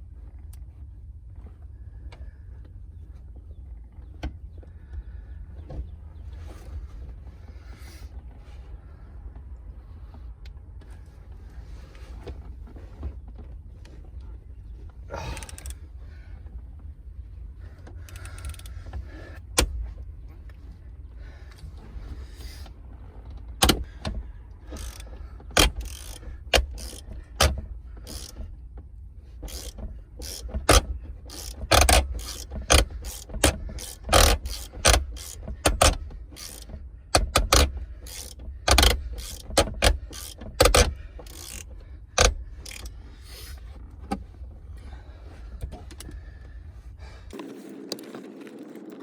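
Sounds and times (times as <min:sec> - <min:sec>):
steady low rumble: 0:00.0 - 0:25.6
socket ratchet clicking: 0:15.3 - 0:15.8, 0:18.0 - 0:18.8, 0:24.7 - 0:28.4, 0:29.4 - 0:42.9.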